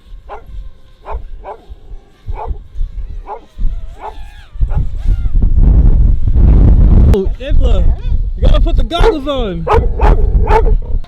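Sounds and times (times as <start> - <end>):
dog barking: 0.3 - 2.6, 3.2 - 4.9, 9.0 - 10.8.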